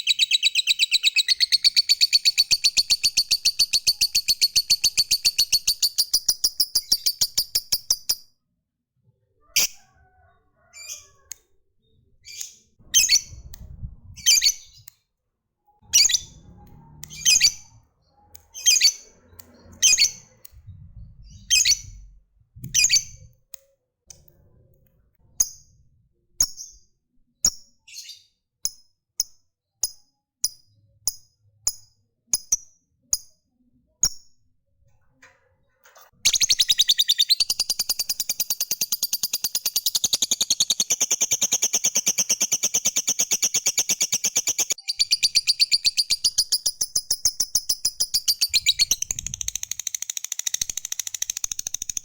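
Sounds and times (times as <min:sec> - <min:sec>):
bird chattering trill: 0:00.0 - 0:08.2, 0:36.3 - 0:52.0
sharp high bird chirps: 0:00.0 - 0:08.3, 0:14.2 - 0:14.9, 0:15.8 - 0:20.4, 0:36.2 - 0:52.0.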